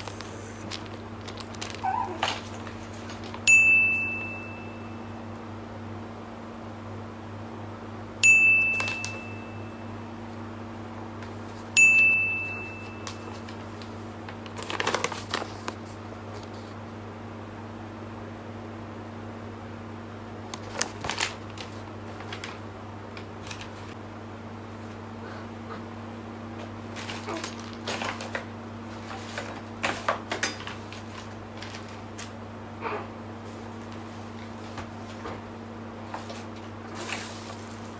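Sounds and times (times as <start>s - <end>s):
clicks and rattles: 0.0s - 3.5s, 27.0s - 32.4s
knocks and clatters of parts: 0.0s - 3.5s, 26.6s - 32.4s
steady low hum: 0.0s - 14.7s, 15.3s - 37.9s
bright dings: 3.4s - 5.3s, 8.2s - 10.1s, 11.8s - 13.4s.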